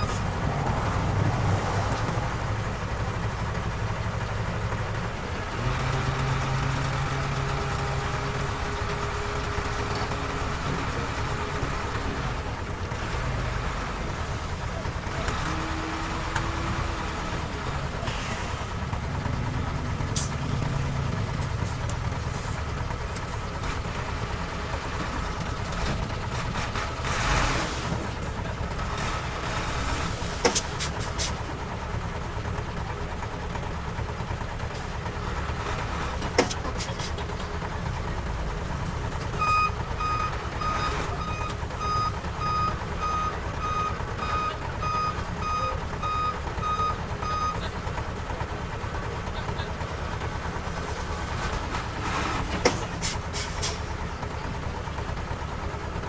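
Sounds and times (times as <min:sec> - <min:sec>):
diesel machinery running: 0:00.0 - 0:56.0
reversing alarm beeping: 0:39.4 - 0:47.6.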